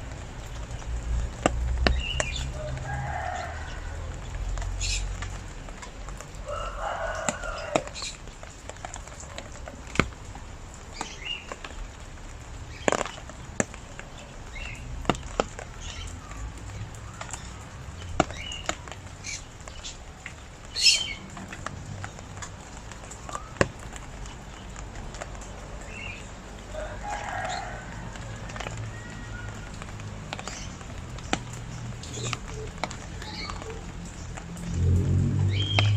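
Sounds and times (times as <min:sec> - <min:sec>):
rain falling: 0:00.0 - 0:35.9
sharp drips: 0:00.0 - 0:35.9
bird calls and chirps: 0:20.7 - 0:21.4, 0:35.5 - 0:35.9.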